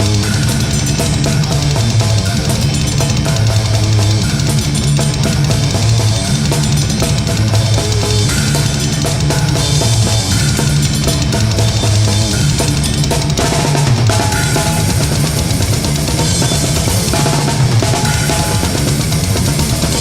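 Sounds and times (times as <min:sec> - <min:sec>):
bass guitar: 0:00.0 - 0:20.0
distorted guitars: 0:00.0 - 0:20.0
fast dense drumming: 0:00.0 - 0:20.0.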